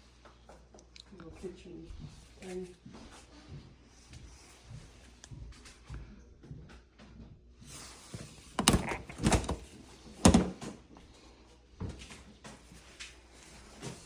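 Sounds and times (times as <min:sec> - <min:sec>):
door thunks and knocks: 0:08.6 - 0:10.7.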